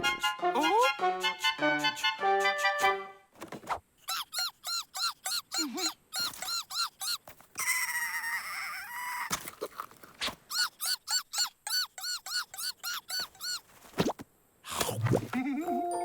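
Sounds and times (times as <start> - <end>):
cartoon squeaks: 4.0 - 9.3, 10.2 - 13.8.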